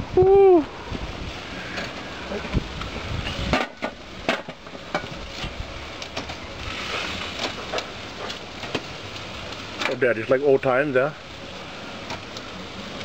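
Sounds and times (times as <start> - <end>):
steady background noise: 0.0 - 13.0.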